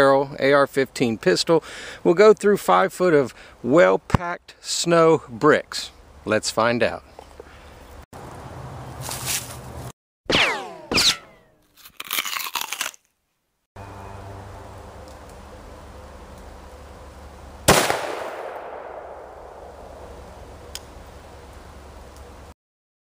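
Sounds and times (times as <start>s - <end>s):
gunshot: 10.3s - 11.4s, 17.7s - 19.8s
crackling crunching noises: 11.2s - 13.2s
steady low hum: 13.8s - 22.5s.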